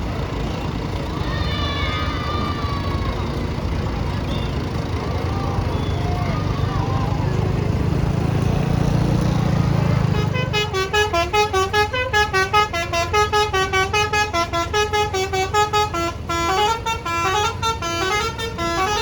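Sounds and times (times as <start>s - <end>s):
bus engine rumbling: 0.0s - 19.0s
musical horn melody: 10.1s - 19.0s.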